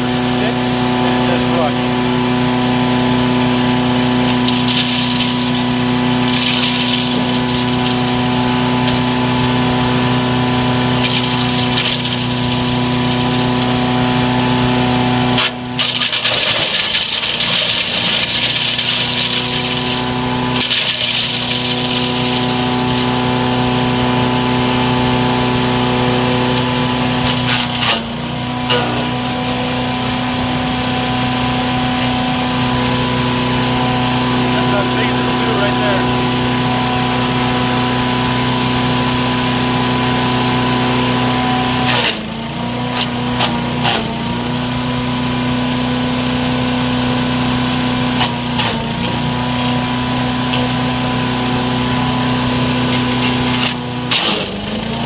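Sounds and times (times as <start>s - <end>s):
wood chipper engine running: 0.0s - 55.0s
rushing of material through chipper: 3.0s - 55.0s.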